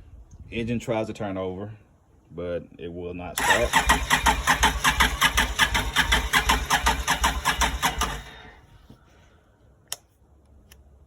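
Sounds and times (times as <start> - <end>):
engine cranking on electric starter: 3.4 - 8.6.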